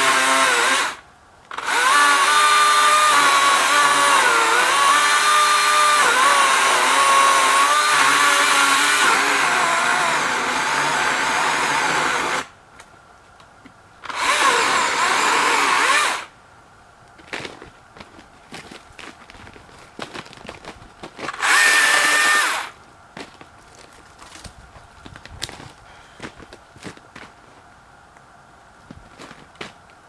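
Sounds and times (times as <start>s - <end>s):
electric chainsaw cutting wood: 0.0s - 12.5s, 14.0s - 16.3s, 21.3s - 22.7s.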